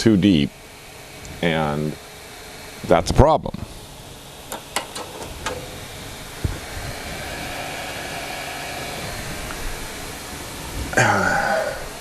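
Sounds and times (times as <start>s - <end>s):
hot air station hissing: 0.0s - 12.0s.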